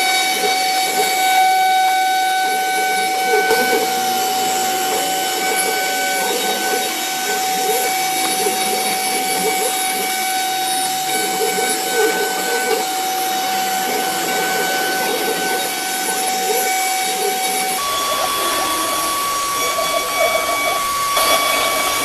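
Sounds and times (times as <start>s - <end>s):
hiss: 0.0s - 22.0s
router spindle high whine: 0.0s - 22.0s.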